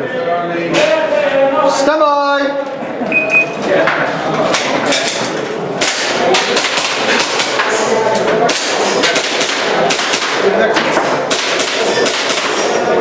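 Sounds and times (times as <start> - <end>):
airsoft pistol shots: 8.5 - 10.4, 11.3 - 12.5.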